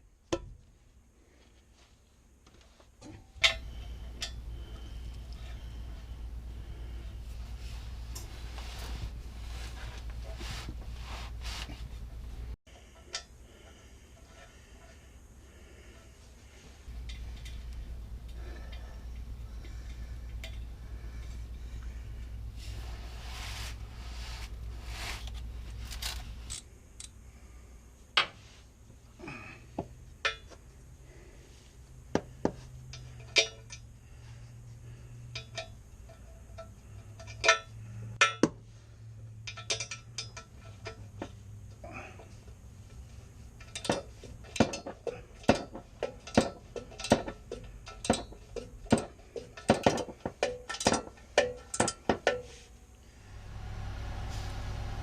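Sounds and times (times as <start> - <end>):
metal tools clinking: 39.4 - 41.4.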